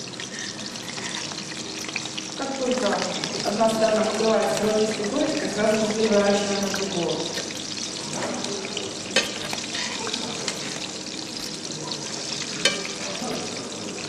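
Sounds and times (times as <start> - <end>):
pancakes sizzling in oil: 0.0 - 14.0.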